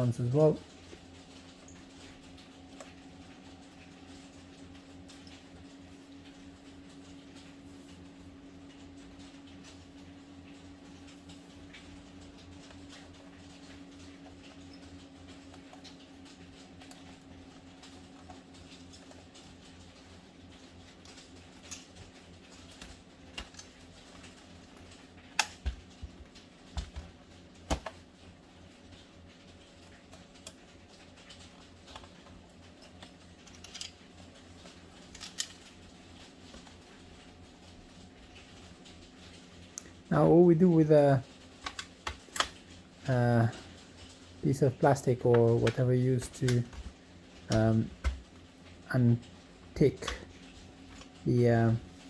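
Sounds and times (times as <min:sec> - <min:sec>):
plastic parts handled: 0:31.8 - 0:35.8.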